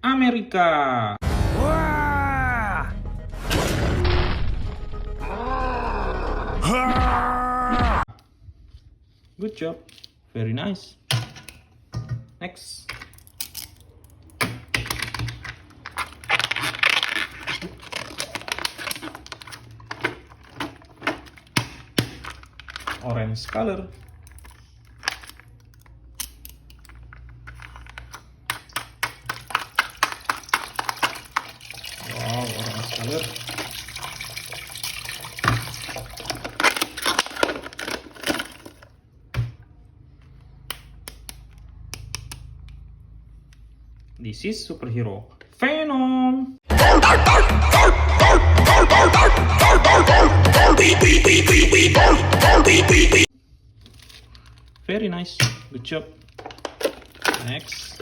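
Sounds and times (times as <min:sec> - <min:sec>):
plastic scraping and rattling: 0:14.7 - 0:25.9, 0:36.0 - 0:39.0, 0:56.2 - 0:58.0
packaging rustling and crinkling: 0:14.9 - 0:26.0, 0:35.7 - 0:39.0, 0:53.6 - 0:54.9, 0:56.2 - 0:58.0.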